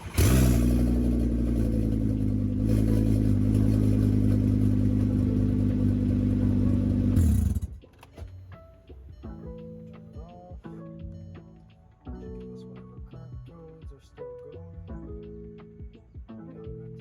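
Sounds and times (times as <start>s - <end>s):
car engine starting and running: 0.0s - 8.3s.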